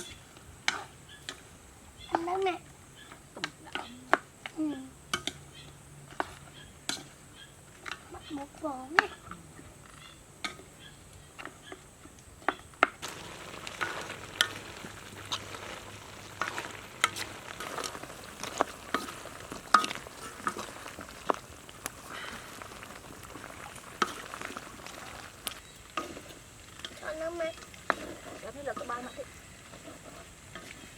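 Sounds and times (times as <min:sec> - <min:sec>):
food sizzling in a pan: 0:00.0 - 0:05.4, 0:12.8 - 0:30.9
utensil clicking against pan: 0:12.4 - 0:30.9.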